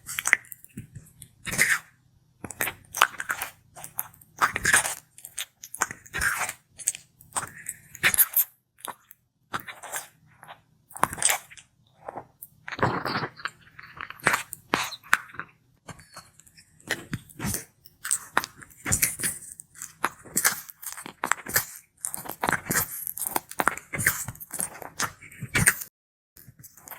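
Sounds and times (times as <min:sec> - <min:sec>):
tortoise crunchy chewing: 0:16.8 - 0:25.8.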